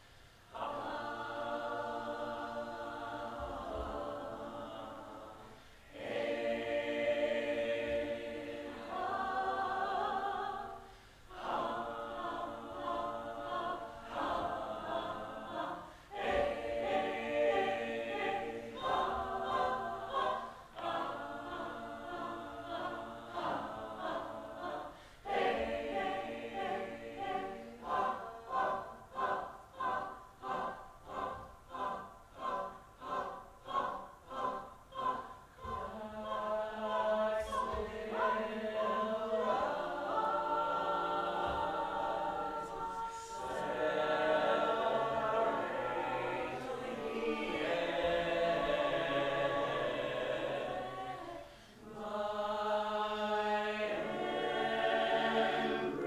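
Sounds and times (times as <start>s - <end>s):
group of voices singing: 0.4s - 56.0s.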